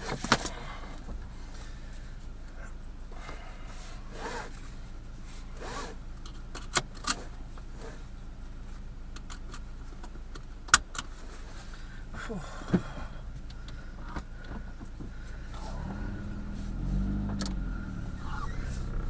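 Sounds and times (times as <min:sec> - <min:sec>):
soft rustles: 0:00.0 - 0:06.5, 0:11.0 - 0:12.2, 0:13.2 - 0:19.0
steady low hum: 0:00.0 - 0:19.0
sharp clicks: 0:17.3 - 0:19.0.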